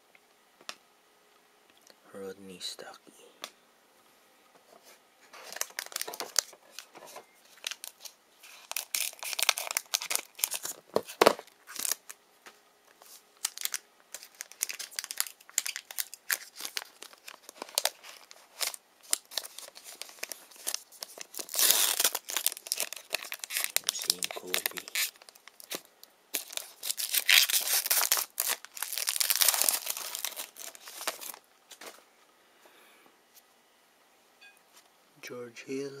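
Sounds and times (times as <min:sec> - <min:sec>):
plastic wrapper crinkling and tearing: 0:05.4 - 0:12.2, 0:12.9 - 0:31.9.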